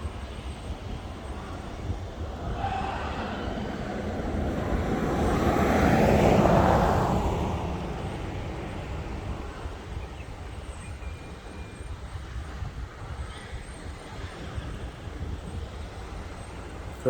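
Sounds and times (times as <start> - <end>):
steady low rumble: 0.0 - 10.7
vehicle passing by: 1.1 - 10.4.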